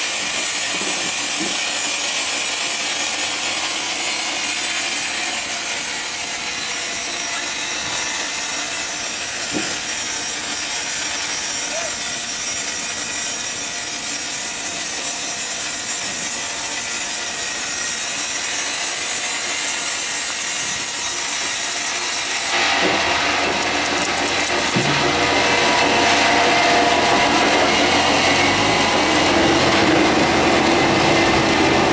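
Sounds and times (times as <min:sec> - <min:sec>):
saw blade cutting hardwood: 0:00.0 - 0:31.9.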